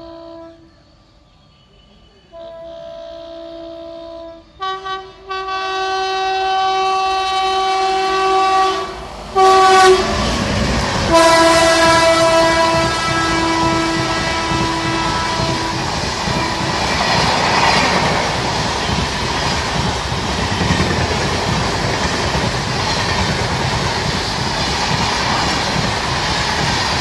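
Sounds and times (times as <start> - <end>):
locomotive horn: 0.0 - 0.7, 1.7 - 10.4, 11.0 - 18.0
train wheels clattering over rail joints: 10.2 - 27.0.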